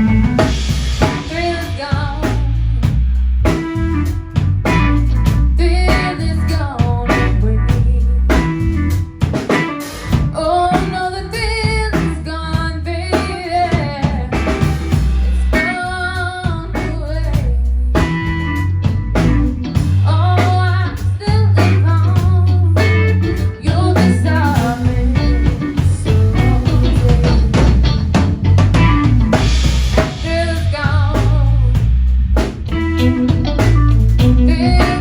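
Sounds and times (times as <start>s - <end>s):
drum kit: 0.0s - 35.0s
electric guitar: 0.0s - 35.0s
person singing: 5.6s - 8.4s, 20.1s - 27.8s, 34.3s - 35.0s.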